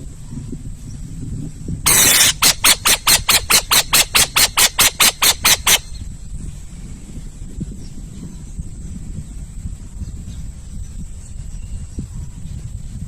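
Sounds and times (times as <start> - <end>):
owl screeching: 1.9 - 5.9.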